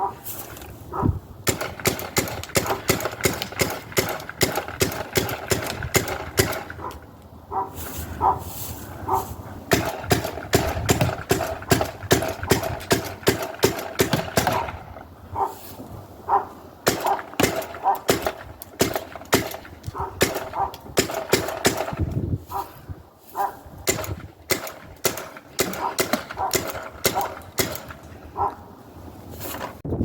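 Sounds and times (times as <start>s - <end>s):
paintball gun firing: 1.4s - 6.9s, 9.7s - 14.9s, 16.8s - 22.2s, 23.8s - 28.1s.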